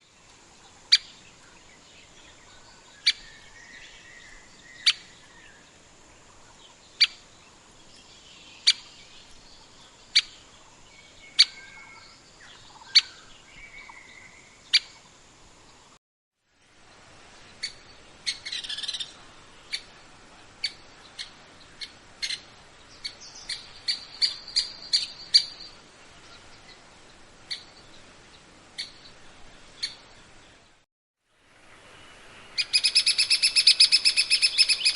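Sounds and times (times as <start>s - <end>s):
woodpecker call notes: 10.1s - 10.4s, 11.3s - 15.0s, 17.6s - 19.9s, 20.6s - 25.8s, 27.5s - 27.7s, 28.8s - 29.1s, 32.6s - 34.9s.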